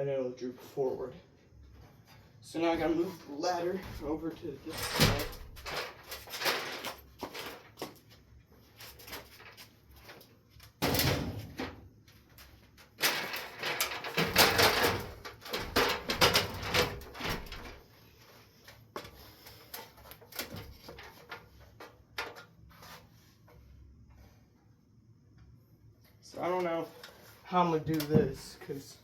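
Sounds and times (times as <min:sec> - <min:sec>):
ladder clattering and scraping: 0:01.7 - 0:23.6, 0:26.4 - 0:28.8
ladder thump: 0:10.8 - 0:11.8.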